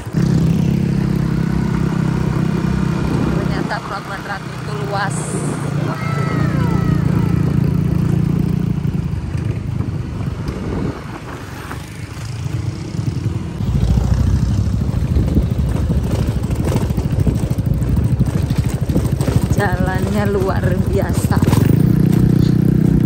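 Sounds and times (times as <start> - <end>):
vehicle engine running: 0.0 - 10.5, 12.9 - 23.0.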